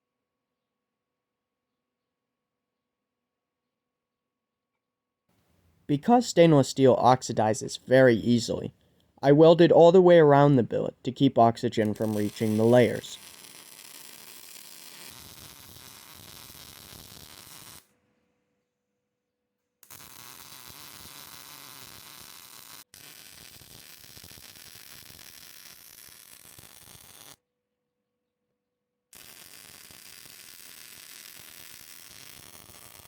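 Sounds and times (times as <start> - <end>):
arc welder buzzing hiss: 11.9 - 17.8, 19.8 - 27.4, 29.2 - 33.0.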